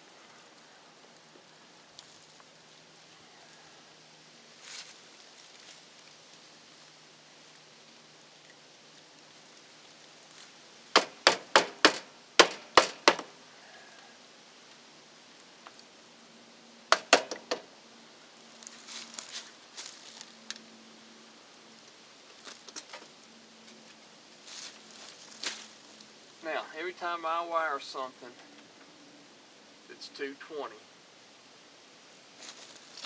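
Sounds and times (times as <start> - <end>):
hand tool knocks: 11.0 - 13.3, 16.9 - 17.7.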